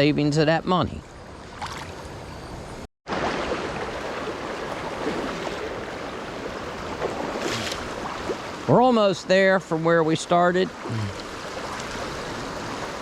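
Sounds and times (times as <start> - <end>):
river water rushing: 3.1 - 8.8, 10.7 - 13.0.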